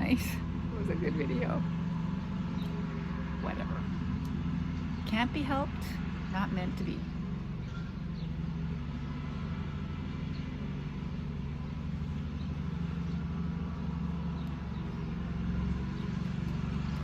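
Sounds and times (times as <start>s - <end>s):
lawnmower engine running: 0.0s - 17.0s.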